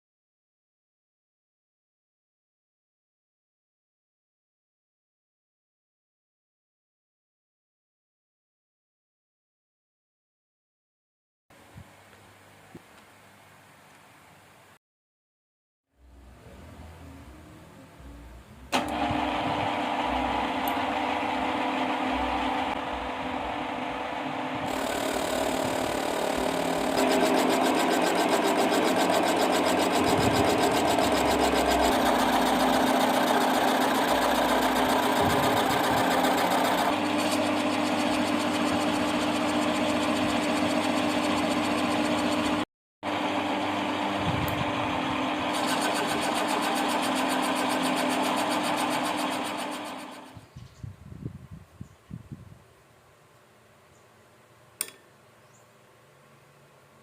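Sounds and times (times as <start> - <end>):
ball mill motor humming: 18.0 - 50.4.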